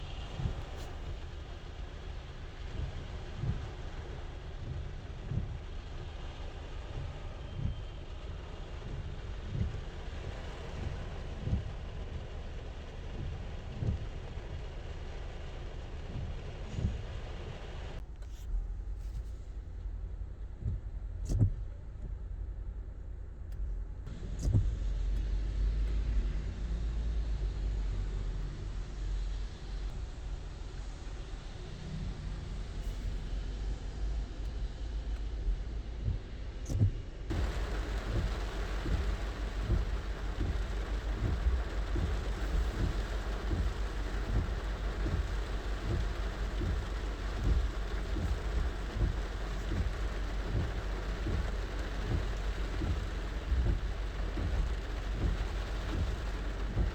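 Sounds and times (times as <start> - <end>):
heavy raindrops tapping roof: 0.0 - 18.0, 37.3 - 56.9
rain hiss: 0.0 - 18.0, 37.3 - 56.9
rain rumble inside car: 0.0 - 56.9.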